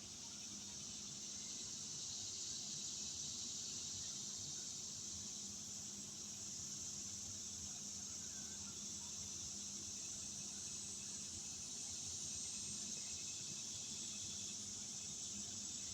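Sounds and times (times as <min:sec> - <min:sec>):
crickets trilling: 0:07.6 - 0:15.9.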